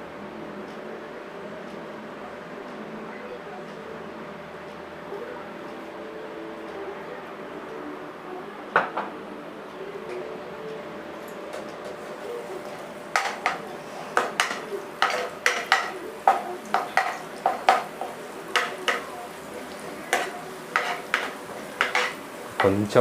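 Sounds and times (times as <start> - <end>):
frying sizzle: 11.2 - 23.0
metal spatula scraping a pan: 13.1 - 19.1, 19.8 - 22.8.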